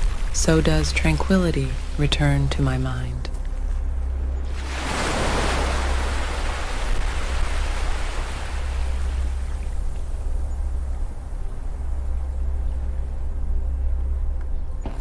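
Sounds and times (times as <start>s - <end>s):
low surf rumble: 0.0s - 15.0s
ocean wave washing in: 4.5s - 9.7s.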